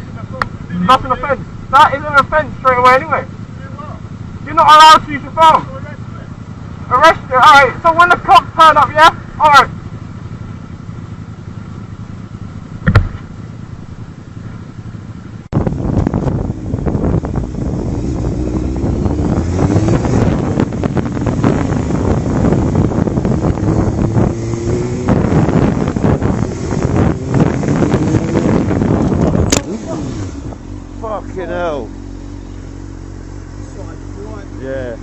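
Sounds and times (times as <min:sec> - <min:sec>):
low road noise: 0:00.0 - 0:35.0
vehicle engine accelerating: 0:00.0 - 0:35.0
sharp knock: 0:12.8 - 0:13.3
wind rush on microphone: 0:15.5 - 0:30.8.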